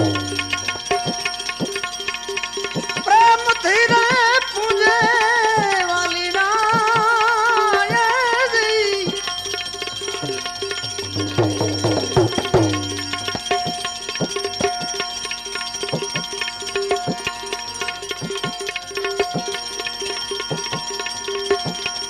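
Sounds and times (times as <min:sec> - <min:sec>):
wavering melody line: 0:00.0 - 0:01.0, 0:10.2 - 0:13.9
tabla strokes: 0:00.0 - 0:22.0.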